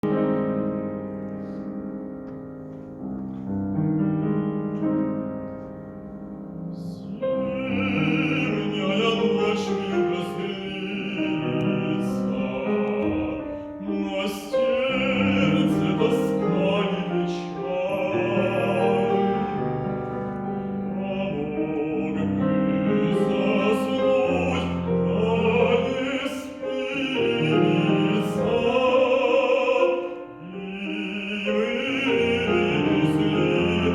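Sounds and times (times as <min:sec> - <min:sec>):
piano accompaniment: 0:00.0 - 0:33.9
man singing operatically: 0:06.7 - 0:33.9.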